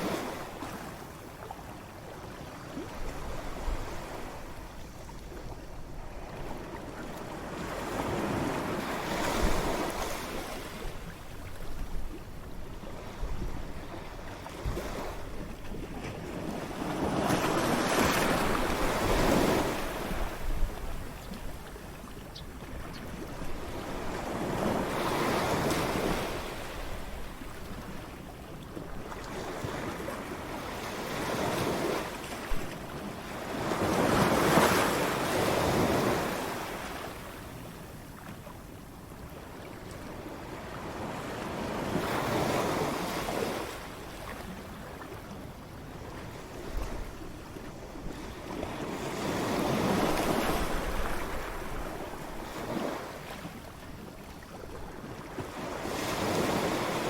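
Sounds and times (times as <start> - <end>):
ocean waves crashing: 16.5 - 27.2.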